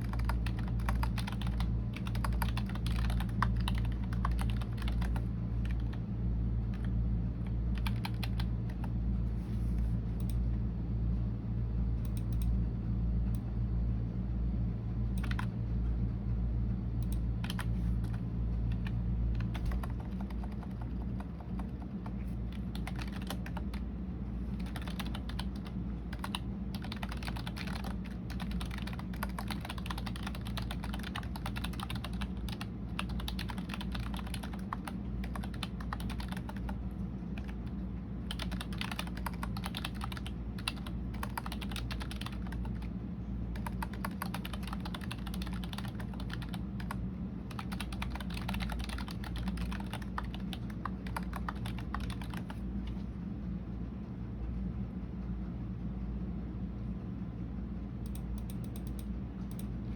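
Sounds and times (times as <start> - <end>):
typing on computer keyboard: 0.0 - 6.0, 7.7 - 8.9, 15.2 - 15.5, 17.0 - 23.8, 24.5 - 37.7, 38.3 - 42.9, 43.6 - 52.6, 58.0 - 59.7
steady low hum: 0.0 - 59.9.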